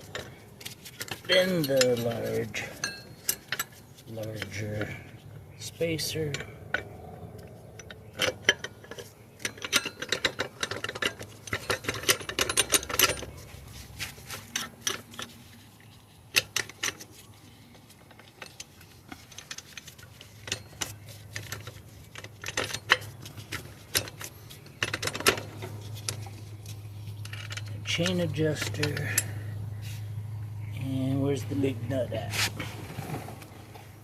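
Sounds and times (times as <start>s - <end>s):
small metal parts clicking: 6.3s - 13.5s.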